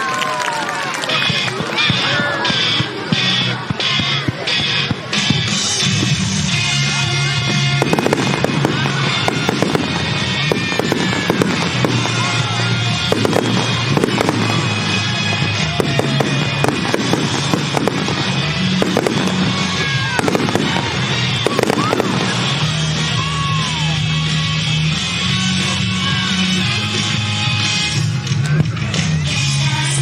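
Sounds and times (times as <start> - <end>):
pop rock music over speakers: 1.3 - 30.0
fireworks bursting with bangs: 2.5 - 29.0
whistling fireworks: 5.1 - 28.6
fireworks crackle: 5.3 - 28.6.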